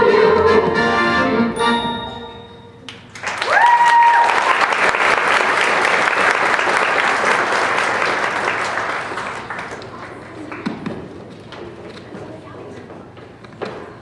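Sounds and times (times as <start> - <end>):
sung note: 1.6 - 2.9
audience applause: 3.1 - 10.7.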